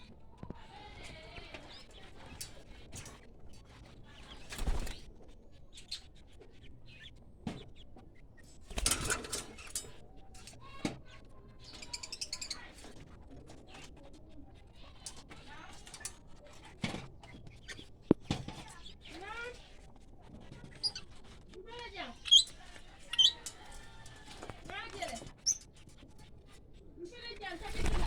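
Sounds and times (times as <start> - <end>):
parrots chirping: 22.2 - 24.2
rustling bursts: 27.6 - 28.0.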